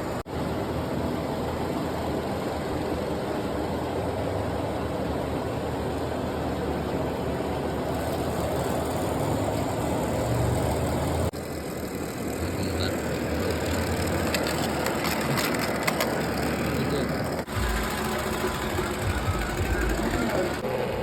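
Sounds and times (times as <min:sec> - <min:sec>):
robot vacuum running: 0:07.6 - 0:21.0.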